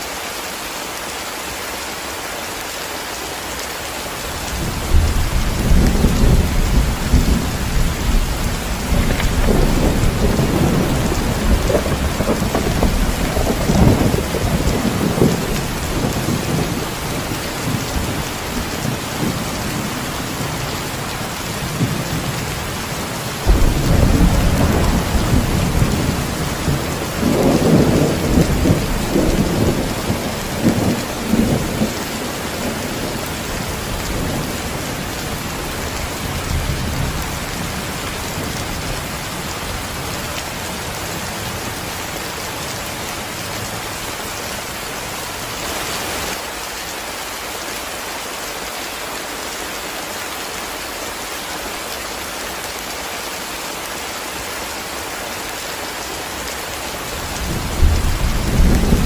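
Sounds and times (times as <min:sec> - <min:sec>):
heavy rain: 0:00.0 - 0:59.0
rolling thunder: 0:04.6 - 0:22.6, 0:23.4 - 0:35.4, 0:57.2 - 0:59.0.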